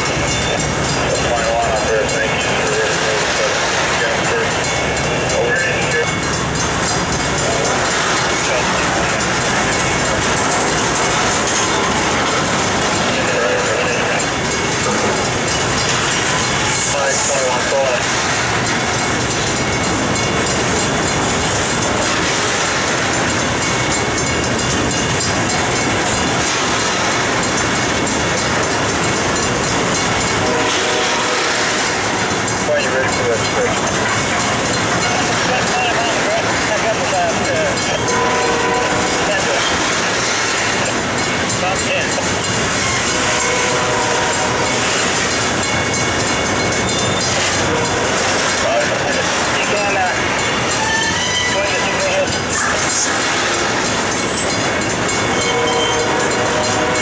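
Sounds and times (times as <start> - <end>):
train cars clattering: 0.0 - 57.0
train wheels rolling on rail: 0.0 - 57.0
thin wheel squeals: 50.7 - 51.8.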